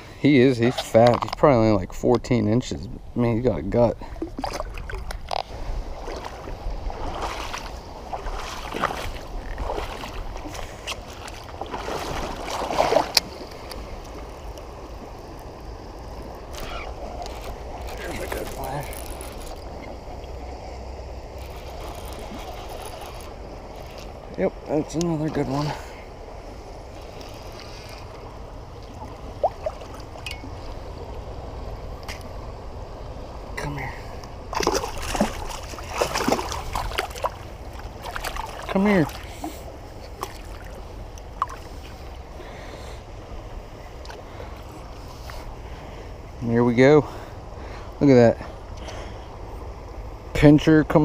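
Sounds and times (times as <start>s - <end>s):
water splashing against kayak: 3.6s - 32.3s, 34.3s - 46.1s
short rising squeak: 16.5s - 17.0s.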